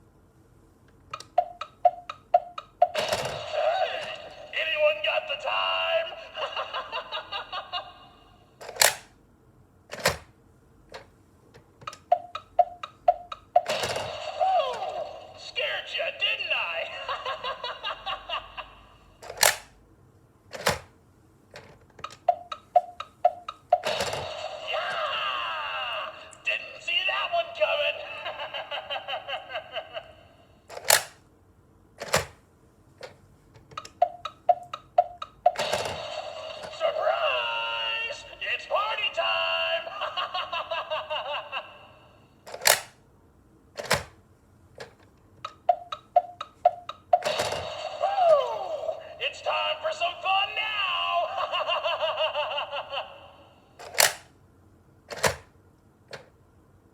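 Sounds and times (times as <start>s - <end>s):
alarm clock sound effect: 12.1s - 15.9s, 22.2s - 25.2s, 33.8s - 39.1s, 45.5s - 50.6s
sharp clicks: 19.2s - 19.7s, 42.5s - 43.0s.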